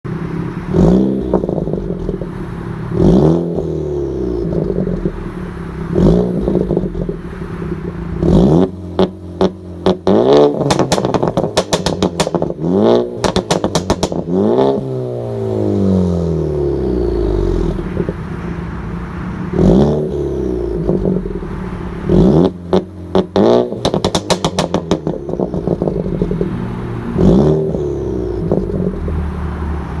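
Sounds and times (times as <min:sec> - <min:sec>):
car engine revving: 0:00.1 - 0:30.0
exhaust crackles and pops: 0:00.6 - 0:15.1, 0:16.8 - 0:26.6, 0:27.2 - 0:29.3.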